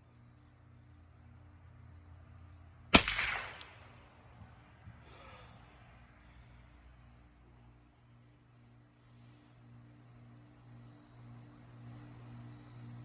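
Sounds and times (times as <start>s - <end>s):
rifle shot: 3.0s - 4.2s.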